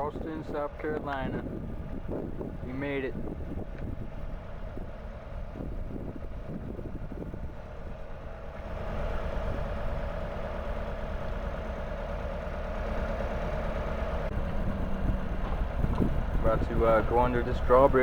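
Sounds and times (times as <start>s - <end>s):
boat engine droning: 0.0s - 18.0s.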